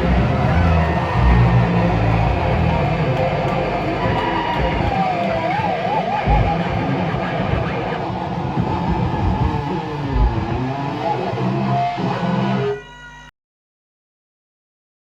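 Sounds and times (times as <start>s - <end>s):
low thuds: 0.0s - 5.5s
electric guitar bending melody: 0.0s - 13.0s.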